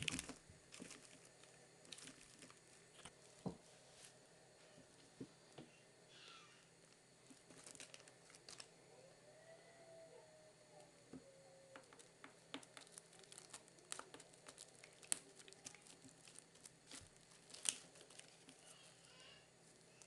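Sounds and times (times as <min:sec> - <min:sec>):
kittens scuffling: 0:00.0 - 0:05.2.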